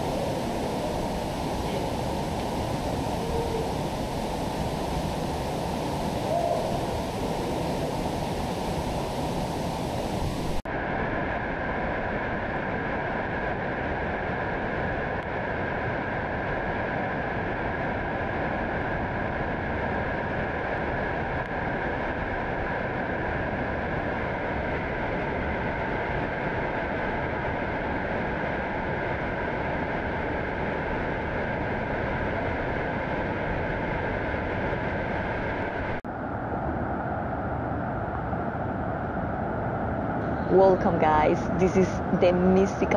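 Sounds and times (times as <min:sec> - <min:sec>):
river water rushing: 0:00.0 - 0:10.6.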